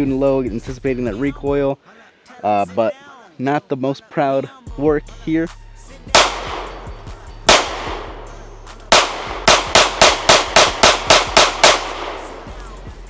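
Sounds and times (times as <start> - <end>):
pistol shots with ringing echo: 6.2 - 12.9.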